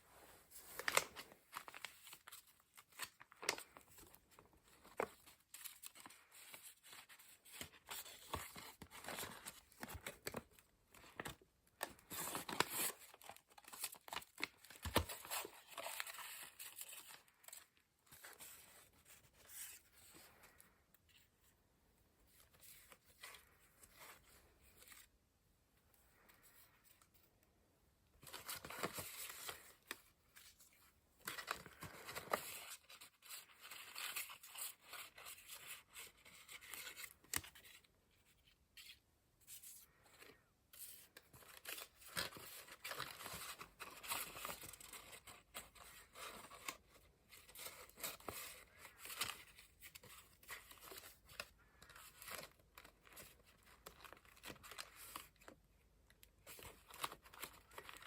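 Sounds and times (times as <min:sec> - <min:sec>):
paper rustling: 0:00.3 - 0:21.3.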